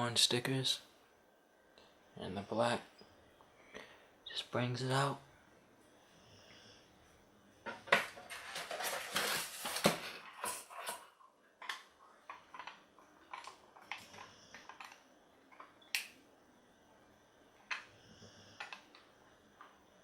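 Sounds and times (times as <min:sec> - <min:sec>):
plastic toy parts clicking: 0:11.6 - 0:16.1.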